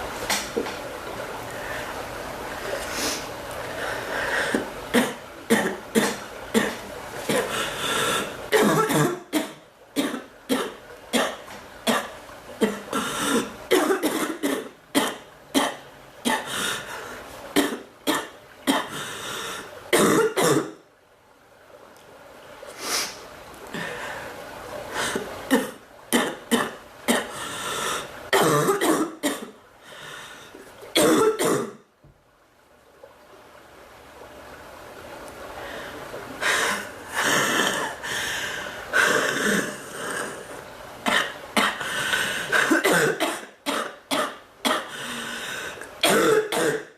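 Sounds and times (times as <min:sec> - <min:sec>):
woman clearing throat: 0:08.6 - 0:16.5
woman coughing: 0:08.6 - 0:16.5, 0:20.0 - 0:20.7, 0:28.4 - 0:29.5, 0:31.0 - 0:31.8, 0:42.6 - 0:44.9, 0:46.0 - 0:46.9.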